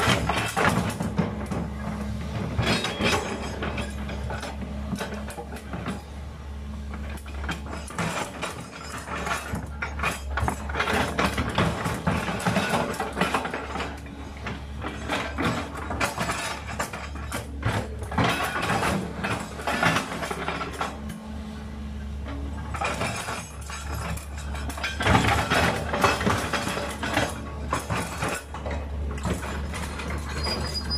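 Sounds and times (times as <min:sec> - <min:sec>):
metallic clanking and creaking: 0:00.0 - 0:06.2, 0:06.9 - 0:21.2, 0:22.0 - 0:30.9
excavator engine droning: 0:00.0 - 0:30.9.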